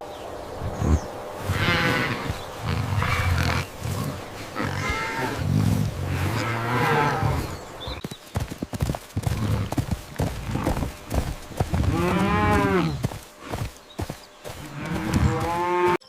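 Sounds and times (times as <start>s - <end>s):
cattle mooing: 1.4s - 7.6s, 11.7s - 13.6s, 14.6s - 16.0s.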